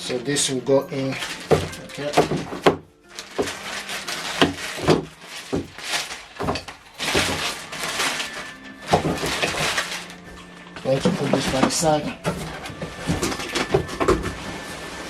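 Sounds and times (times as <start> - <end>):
cardboard and plastic rustling: 0.0 - 15.0
packaging knocks and thuds: 0.9 - 14.7.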